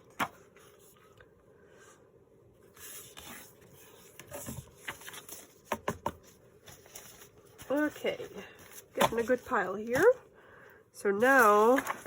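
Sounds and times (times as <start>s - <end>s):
paper rustling and sliding: 2.7s - 10.2s, 11.2s - 12.0s.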